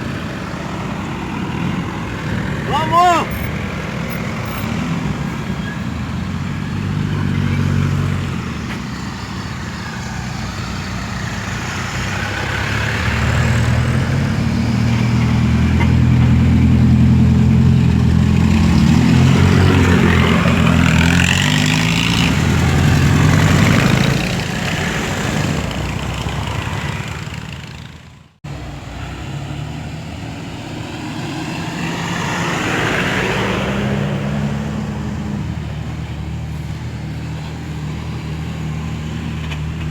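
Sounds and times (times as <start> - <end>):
off-road vehicle engine running: 0.0 - 39.9.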